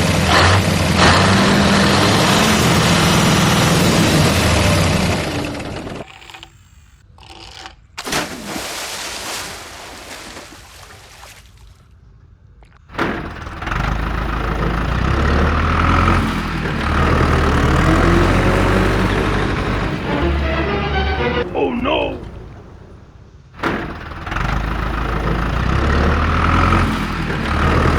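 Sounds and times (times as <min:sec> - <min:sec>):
vehicle engine running: 0:00.0 - 0:06.0, 0:12.9 - 0:27.9.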